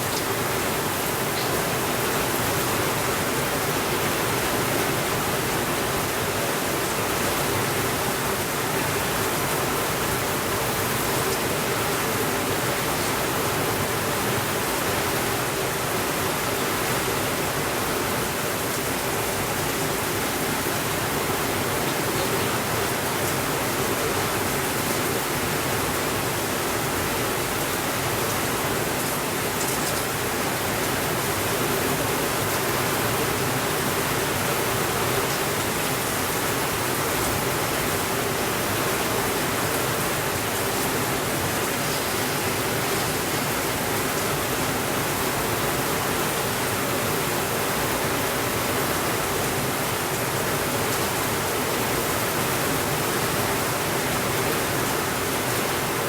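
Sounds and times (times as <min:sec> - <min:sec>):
steady rainfall hiss: 0:00.0 - 0:56.0.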